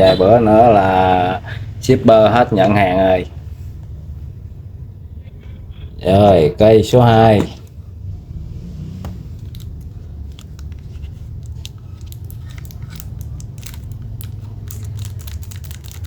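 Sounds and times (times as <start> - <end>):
low background rumble: 0.0 - 16.0
packaging crinkling and clicking: 9.4 - 16.0.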